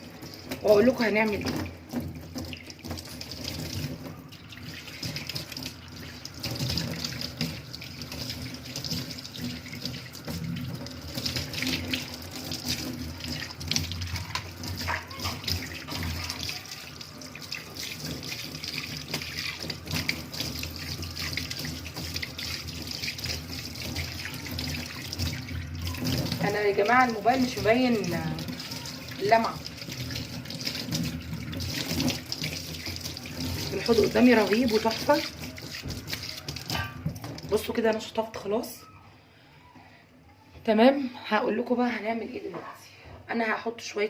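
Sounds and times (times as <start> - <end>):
knocks and clatter in sink: 0.5 - 4.2, 4.8 - 16.4, 17.7 - 38.1
tap running into a sink: 1.3 - 16.5, 29.4 - 37.7.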